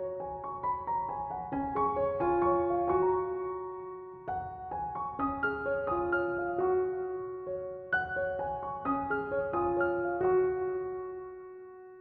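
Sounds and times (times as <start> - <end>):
soft slow piano melody: 0.0 - 12.0.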